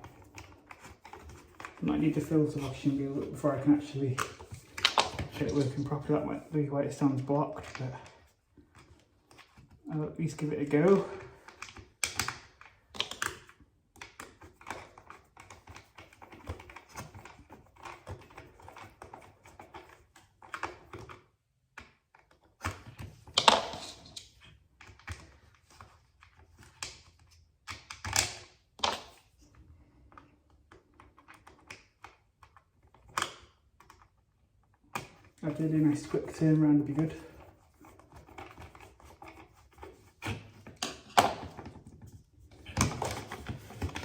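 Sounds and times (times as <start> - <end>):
plastic vacuum parts clicking: 34.9 - 44.0.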